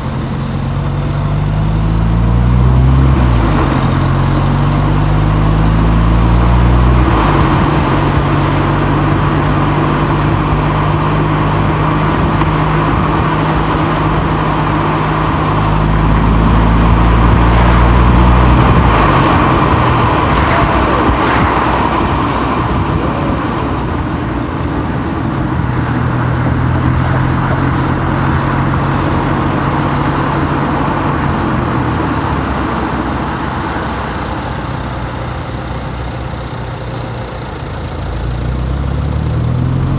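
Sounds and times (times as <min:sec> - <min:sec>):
car engine: 0:00.0 - 0:39.9
tyres on road: 0:00.0 - 0:39.9
short high chirps: 0:17.3 - 0:19.8.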